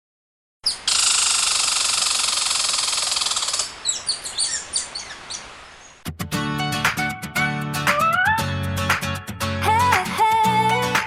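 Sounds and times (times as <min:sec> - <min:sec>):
birds chirping: 0:00.6 - 0:06.1
plucked guitar music: 0:06.1 - 0:11.0.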